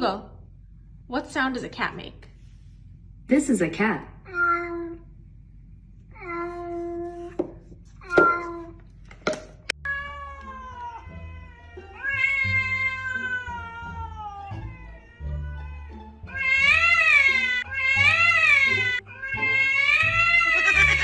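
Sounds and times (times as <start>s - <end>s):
cat yowling: 16.3s - 21.0s.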